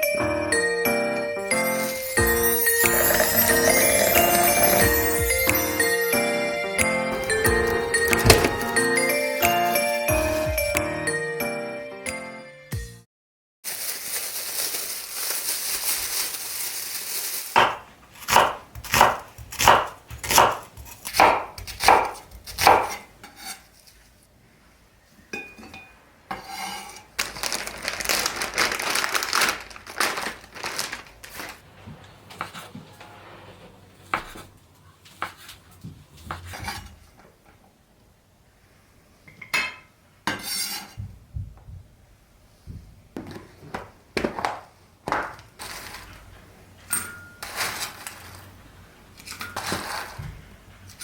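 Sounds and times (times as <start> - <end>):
knife cutting strokes: 17.6 - 24.1.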